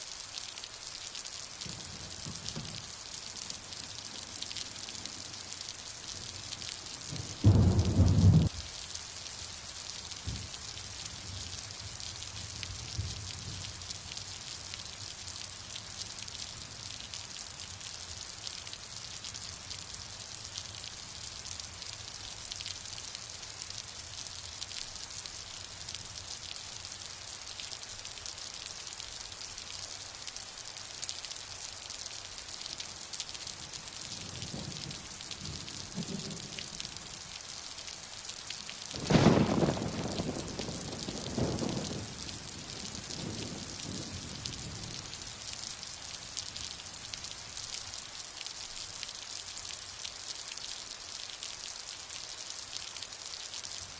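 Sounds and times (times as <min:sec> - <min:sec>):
steady rain falling: 0:00.0 - 0:53.9
thunder rumbling: 0:07.1 - 0:08.7, 0:34.4 - 0:36.7, 0:39.0 - 0:45.1.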